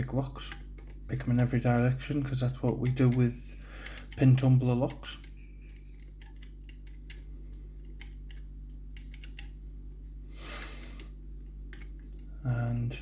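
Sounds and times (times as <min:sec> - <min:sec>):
low hum: 0:00.0 - 0:13.0
lock-picking metal clicks: 0:02.5 - 0:09.6.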